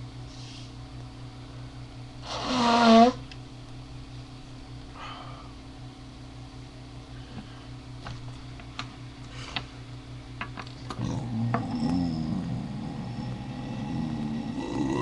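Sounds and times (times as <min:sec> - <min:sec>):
low steady hum: 0:00.0 - 0:15.0
man belching: 0:13.1 - 0:15.0.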